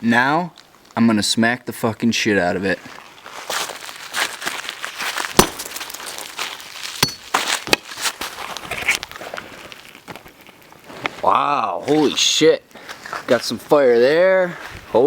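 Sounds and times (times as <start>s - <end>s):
small crackles: 0.5s - 1.0s, 2.8s - 13.6s
sledgehammer smashing phone on metal: 5.4s - 5.9s.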